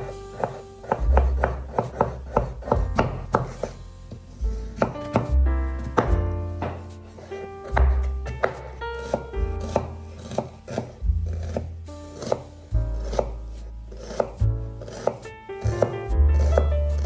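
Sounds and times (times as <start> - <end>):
background music: 0.0 - 17.0
knife chopping on cutting board: 0.0 - 17.0.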